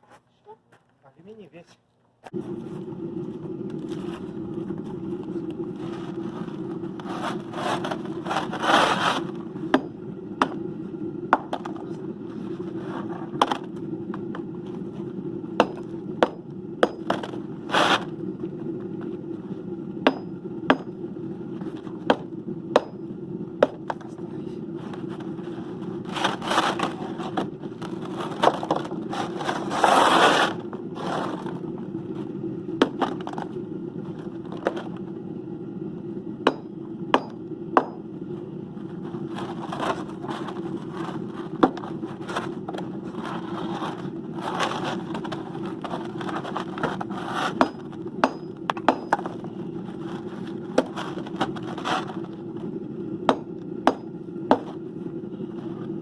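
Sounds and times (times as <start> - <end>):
furnace roaring: 2.1 - 56.0
tools scraping and knocking: 24.8 - 31.6, 39.0 - 52.7.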